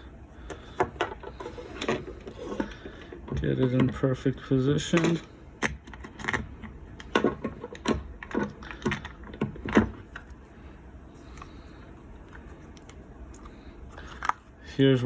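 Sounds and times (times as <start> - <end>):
plastic grip clicks and knocks: 4.9 - 10.3.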